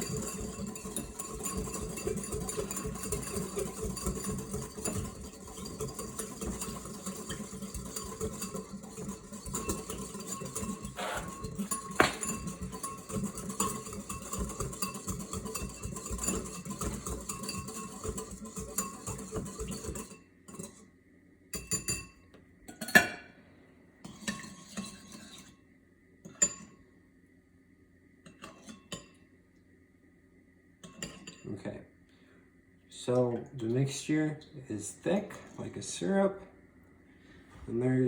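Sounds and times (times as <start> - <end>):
utensil stirring in a bowl: 0.0 - 20.9, 24.1 - 25.6.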